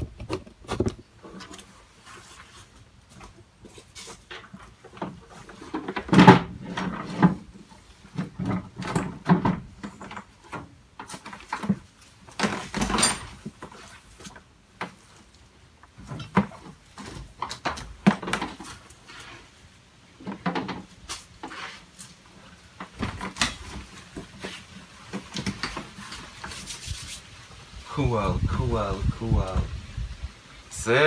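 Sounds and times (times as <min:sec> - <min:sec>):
tools being handled and put away: 0:08.1 - 0:15.0.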